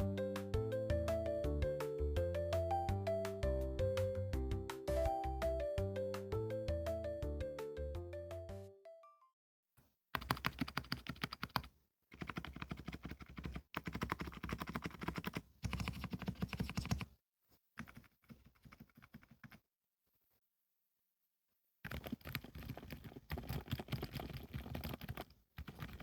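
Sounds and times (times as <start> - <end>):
fast typing on mechanical keyboard: 10.2 - 17.1, 17.8 - 19.6, 21.8 - 26.0.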